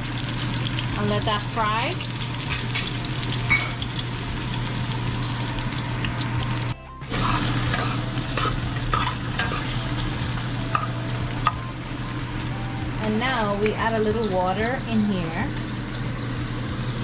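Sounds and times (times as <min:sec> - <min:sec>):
onions sizzling in oil: 0:00.0 - 0:17.0
spoon clinking and scraping pot: 0:02.4 - 0:03.9, 0:07.1 - 0:10.1.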